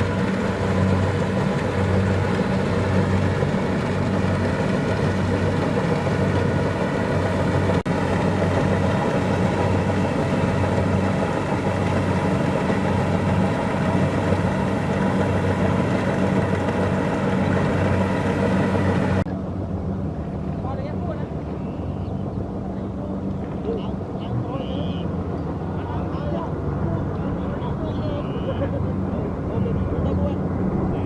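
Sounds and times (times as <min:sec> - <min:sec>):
diesel engine running: 0:00.0 - 0:19.3.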